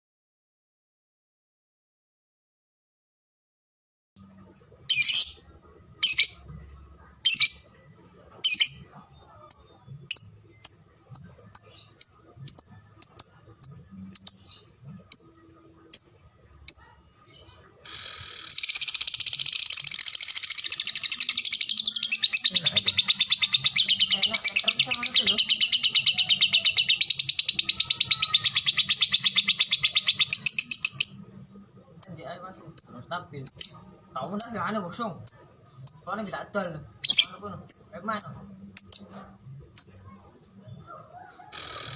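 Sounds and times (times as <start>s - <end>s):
lovebird sharp high chirps: 4.9s - 5.4s
lovebird rapid chattering trill: 17.9s - 31.2s, 41.5s - 41.9s.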